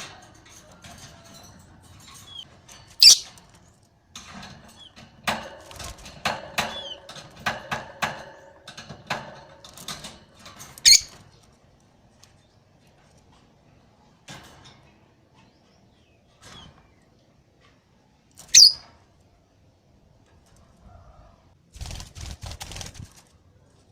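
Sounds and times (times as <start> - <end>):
lovebird shrill calls: 3.0 - 3.2, 10.8 - 11.1, 18.5 - 18.8
lovebird chirping: 3.0 - 3.3, 10.8 - 11.1, 18.5 - 18.8.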